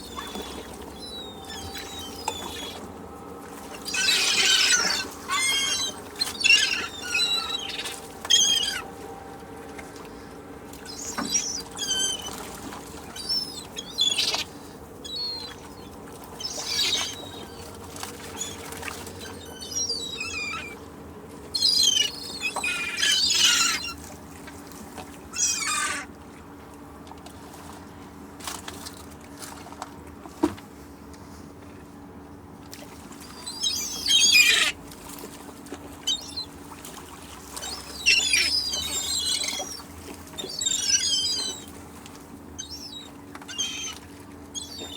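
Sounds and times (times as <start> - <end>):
seagulls calling: 0.0 - 9.0, 10.1 - 24.0, 25.3 - 26.1, 33.2 - 34.8, 35.9 - 36.6, 37.5 - 41.9, 42.5 - 44.9.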